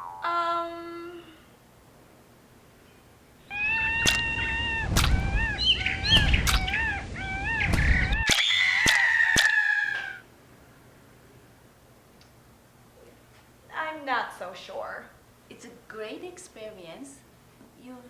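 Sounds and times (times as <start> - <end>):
bird warbling calls: 3.5 - 10.2.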